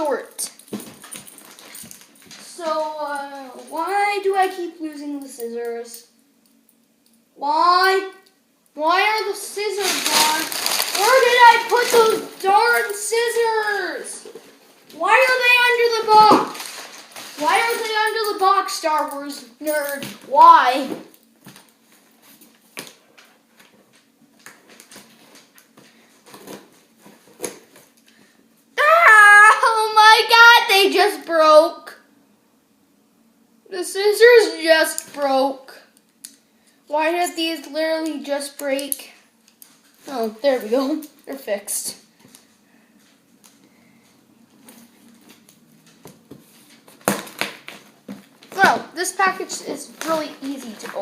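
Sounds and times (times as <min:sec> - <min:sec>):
handling scissors and cardboard: 0:47.0 - 0:51.0.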